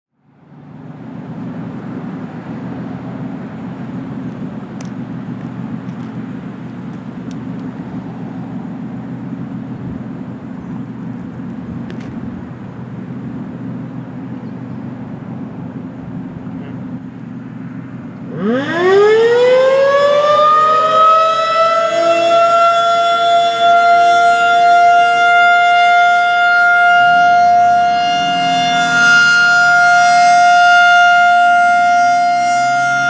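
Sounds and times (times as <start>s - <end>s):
outdoor background noise: 0.1s - 33.0s.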